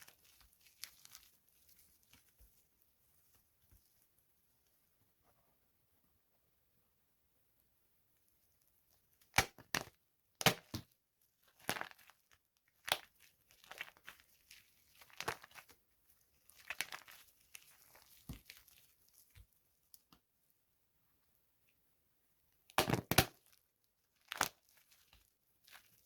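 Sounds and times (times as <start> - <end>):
dry soap cracking and crumbling: 0.0 - 4.1, 8.9 - 20.2, 22.7 - 26.0.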